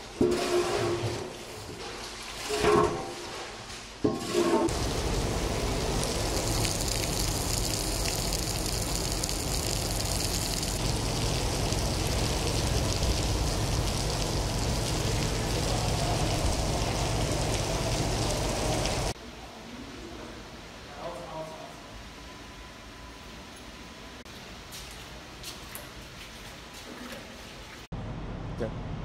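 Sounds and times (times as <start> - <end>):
running water rushing: 4.7 - 19.2.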